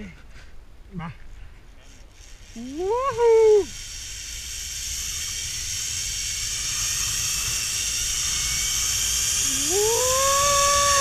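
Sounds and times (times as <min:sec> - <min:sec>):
zipline pulleys hissing on cable: 0:01.7 - 0:11.0
person whooping: 0:02.7 - 0:03.7, 0:09.5 - 0:11.0.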